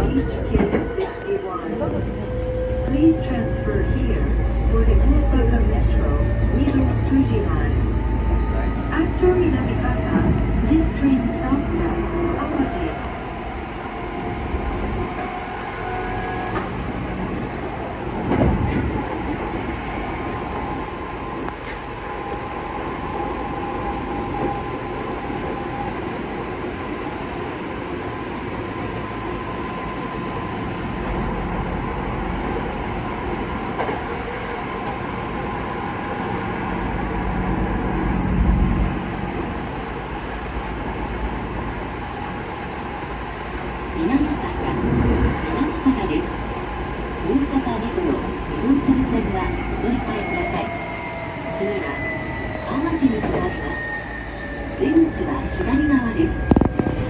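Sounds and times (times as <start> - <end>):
electric train running on rails: 0.0 - 57.0.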